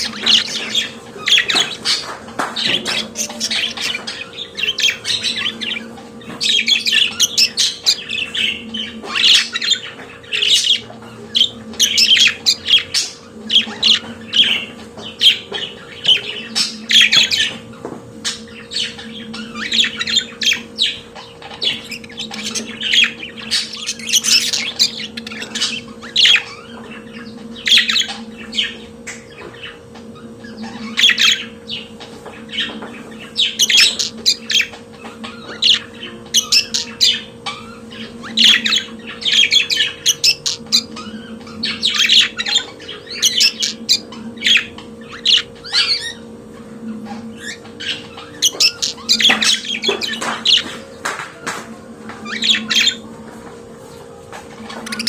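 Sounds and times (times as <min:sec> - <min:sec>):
budgerigars warbling and chattering: 0:00.0 - 0:55.0
steady low hum: 0:00.0 - 0:55.0
budgerigar squawks: 0:46.9 - 0:51.6.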